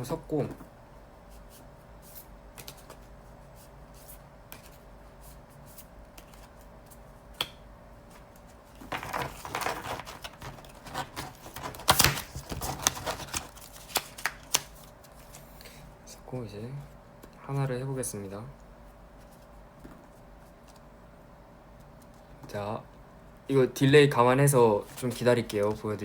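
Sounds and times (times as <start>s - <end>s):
cards being shuffled: 2.1s - 3.1s, 5.6s - 7.5s, 8.4s - 15.5s.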